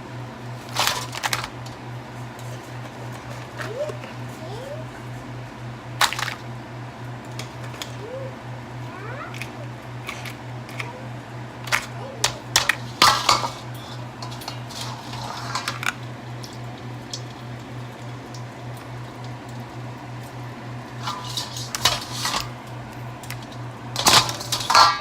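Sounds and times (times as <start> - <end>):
steady low hum: 0.0 - 25.0
utensils clattering on pot and dishes: 0.6 - 1.6, 11.7 - 19.5, 20.2 - 25.0.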